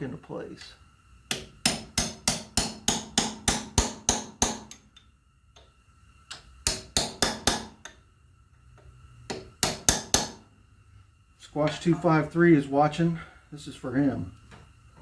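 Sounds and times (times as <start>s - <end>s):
hammer striking steel punch: 1.3s - 4.8s, 6.3s - 8.0s, 9.3s - 10.4s.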